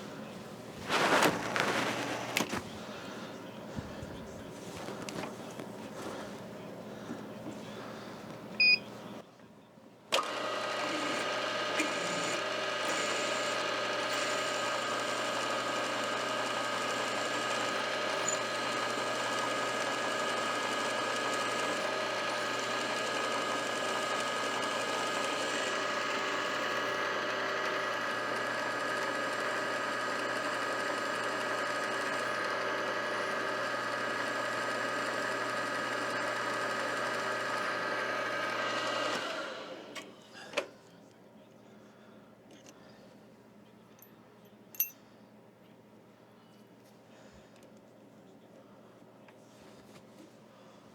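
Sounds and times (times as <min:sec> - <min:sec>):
milling machine whirring: 0:10.2 - 0:40.0.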